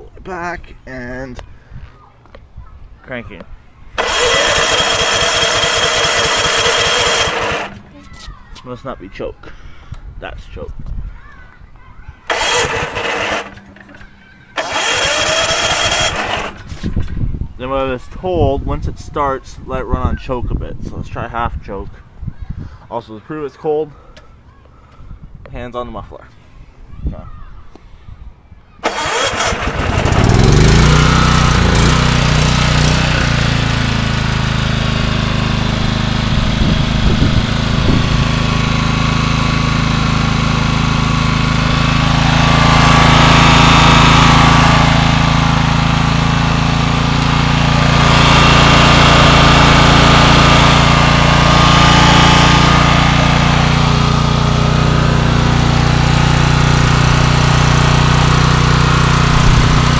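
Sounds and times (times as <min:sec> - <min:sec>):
electric starter cranking: 0:04.0 - 0:07.9, 0:12.3 - 0:17.0, 0:28.8 - 0:59.9
generator engine running: 0:04.0 - 0:08.0, 0:12.3 - 0:17.1, 0:28.8 - 0:59.9.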